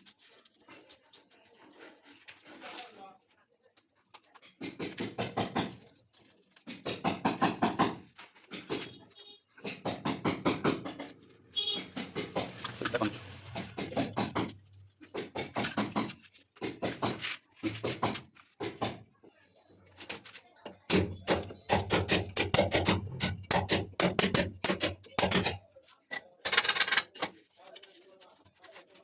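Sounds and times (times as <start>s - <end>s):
people talking: 12.8s - 13.2s.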